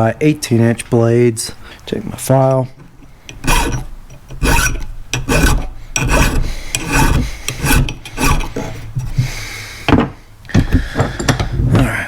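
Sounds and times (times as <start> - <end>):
hand file rasping on metal: 2.8 - 9.4.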